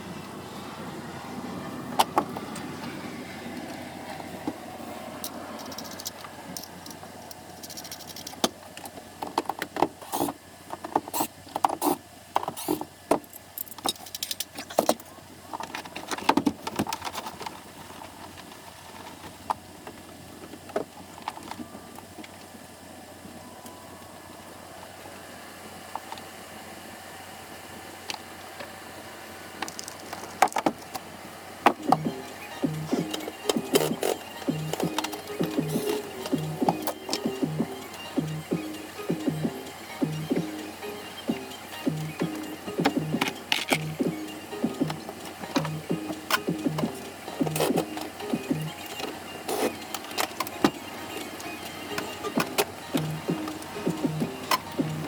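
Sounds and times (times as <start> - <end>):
hand tools clicking and rattling on metal: 5.2 - 17.5, 31.7 - 39.4, 41.8 - 55.0.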